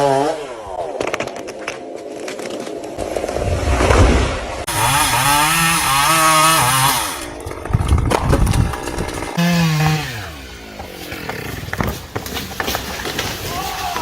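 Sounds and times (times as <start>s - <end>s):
sharp cracks and knocks: 0.9s - 4.0s, 6.8s - 10.0s, 10.8s - 14.0s
chainsaw running at high revs: 4.7s - 11.7s.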